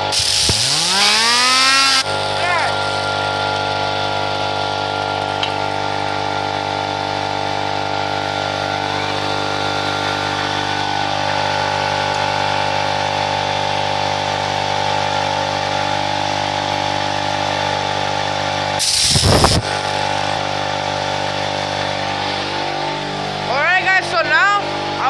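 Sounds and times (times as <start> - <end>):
loud rough motor burst: 0.0 - 4.4, 18.0 - 23.1
power tool motor running: 0.0 - 23.9.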